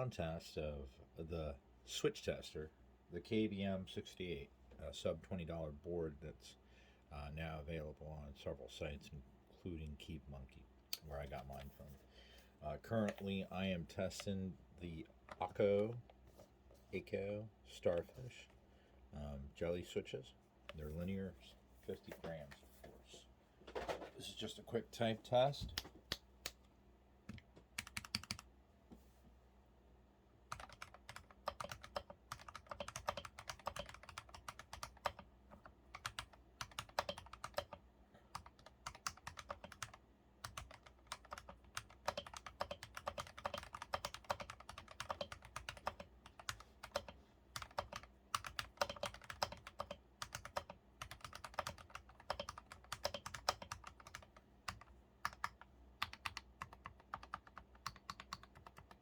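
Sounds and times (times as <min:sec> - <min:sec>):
mechanical keyboard typing: 0:27.3 - 0:28.4, 0:30.5 - 0:59.0.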